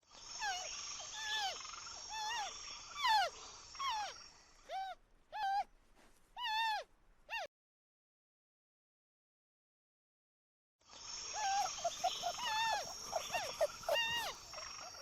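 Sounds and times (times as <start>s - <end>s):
short animal calls: 11.4s - 15.0s.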